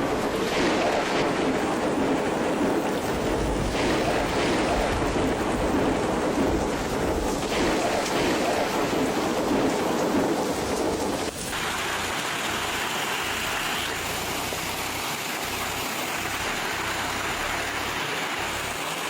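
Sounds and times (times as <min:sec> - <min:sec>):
wind-driven rain and hail: 0:00.0 - 0:19.0.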